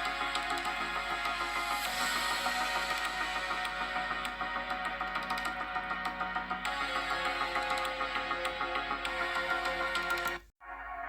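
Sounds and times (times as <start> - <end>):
instrumental background music: 0.0 - 11.0.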